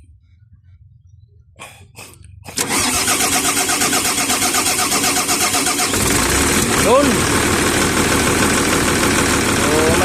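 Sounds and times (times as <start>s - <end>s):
diesel engine starting and running: 2.4s - 10.0s.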